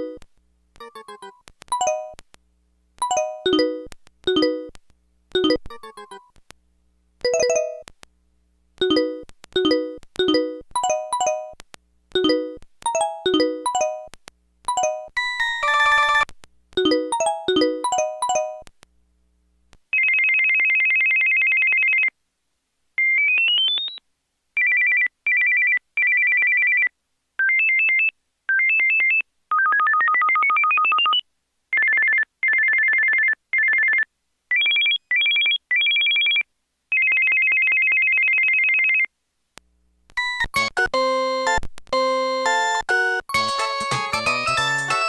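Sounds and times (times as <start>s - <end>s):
cell phone melodic tone: 0.0s - 0.2s, 0.8s - 2.2s, 3.0s - 4.8s, 5.4s - 6.2s, 7.3s - 7.9s, 8.8s - 11.6s, 12.2s - 16.2s, 16.8s - 18.7s
electronic trill ringtone: 0.8s - 2.2s, 3.0s - 4.7s, 5.4s - 6.2s, 7.3s - 7.8s, 8.8s - 11.6s, 12.2s - 14.1s, 14.7s - 16.2s, 16.8s - 18.6s.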